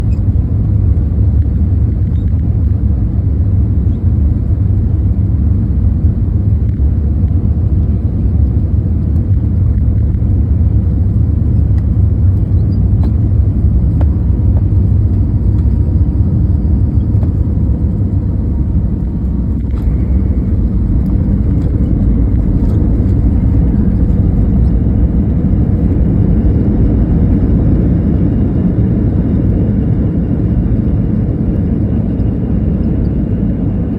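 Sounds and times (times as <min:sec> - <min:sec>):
airliner engines rumbling: 0:00.0 - 0:33.9
rushing air: 0:17.4 - 0:29.0.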